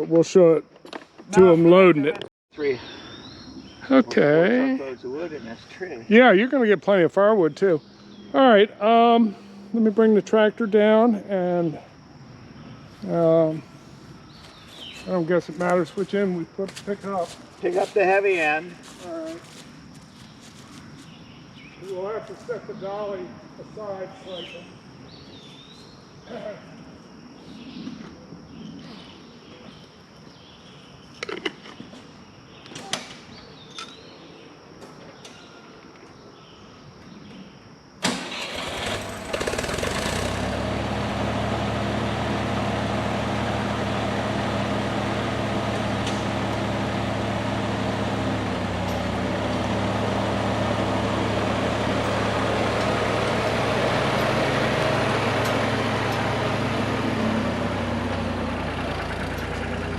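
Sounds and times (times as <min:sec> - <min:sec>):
birds chirping faintly: 0:02.6 - 0:37.8
tractor engine cranking and idling: 0:06.8 - 0:11.5, 0:38.0 - 0:59.9.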